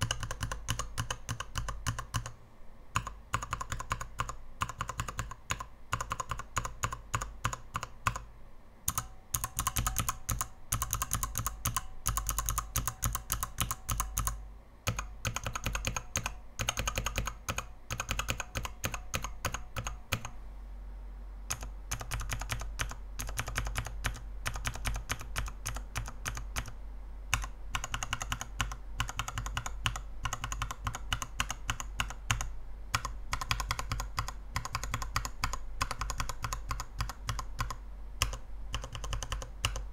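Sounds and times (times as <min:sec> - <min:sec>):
mechanical keyboard key clacks: 0:08.9 - 0:20.3.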